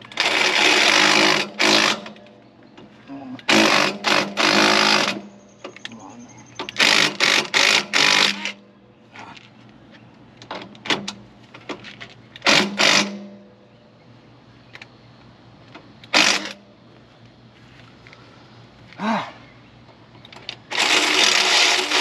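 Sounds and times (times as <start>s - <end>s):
power tool motor bursts: 0.2s - 2.2s, 3.5s - 5.3s, 6.8s - 8.6s, 12.4s - 13.3s, 16.1s - 16.6s, 20.7s - 22.0s.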